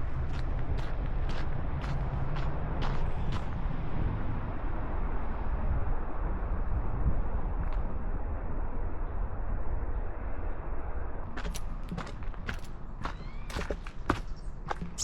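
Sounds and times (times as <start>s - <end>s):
crunching footsteps on trail: 0.0s - 3.6s, 11.3s - 15.0s
low outdoor rumble: 0.0s - 15.0s.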